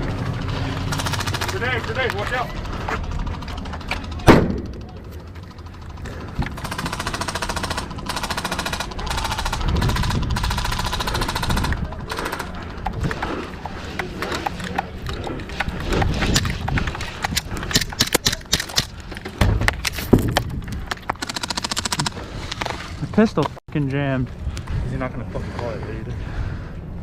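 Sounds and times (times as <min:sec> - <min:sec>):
airsoft guns rapid fire: 0:00.4 - 0:19.0, 0:21.2 - 0:22.3.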